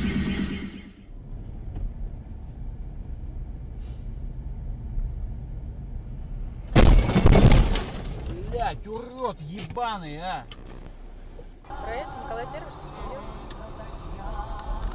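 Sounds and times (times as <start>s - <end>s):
car driving rumble: 0.0s - 14.9s
loud crash: 6.7s - 8.5s.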